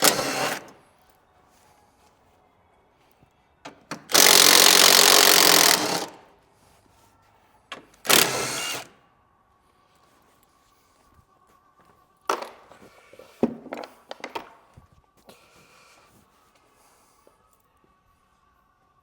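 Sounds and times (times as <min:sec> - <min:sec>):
impact gun bursts: 0:04.1 - 0:06.2.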